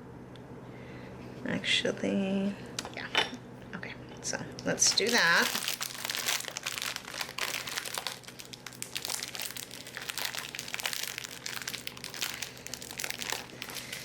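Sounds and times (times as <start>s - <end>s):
packaging crinkling: 4.8s - 14.0s.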